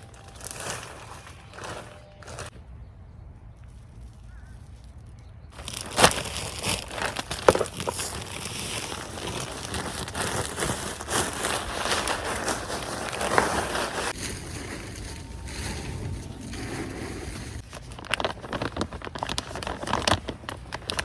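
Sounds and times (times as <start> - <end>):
plastic bags rustling and crinkling: 0.0 - 2.5, 5.5 - 21.0.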